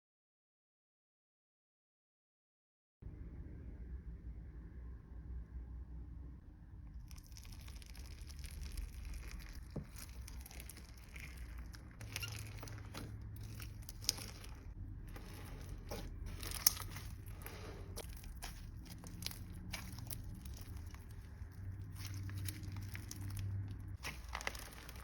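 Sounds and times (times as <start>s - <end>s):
slime crackling and popping: 7.0s - 25.0s.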